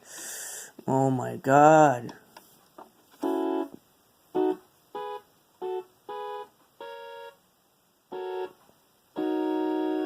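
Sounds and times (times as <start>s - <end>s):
electronic keyboard chords: 8.1s - 10.0s.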